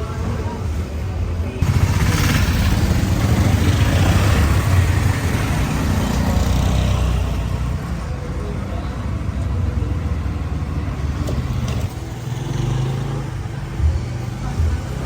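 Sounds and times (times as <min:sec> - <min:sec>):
motor vehicle passing: 0:01.6 - 0:07.7.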